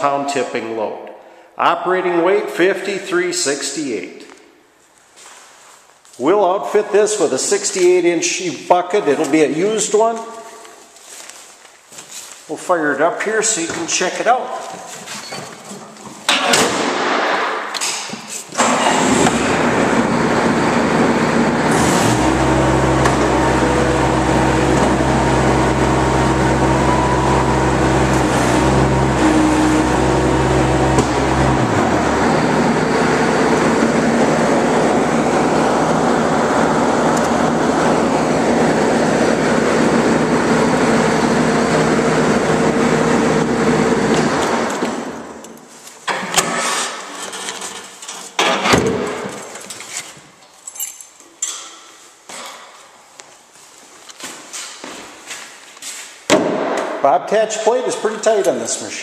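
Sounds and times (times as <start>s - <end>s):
diesel engine running: 18.6s - 45.4s.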